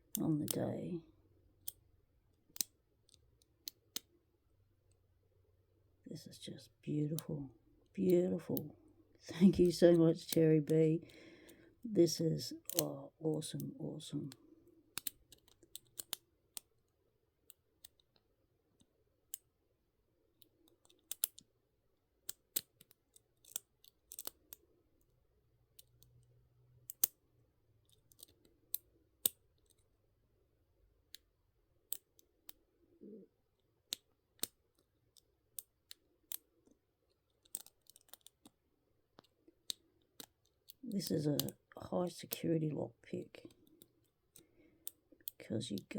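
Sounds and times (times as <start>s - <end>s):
lock pick clicking: 2.5s - 4.1s, 12.6s - 12.8s, 14.3s - 16.8s, 17.5s - 18.2s, 20.4s - 21.5s, 22.2s - 24.6s, 25.7s - 27.2s, 27.8s - 29.9s, 31.0s - 32.6s, 33.8s - 38.6s, 39.2s - 41.6s.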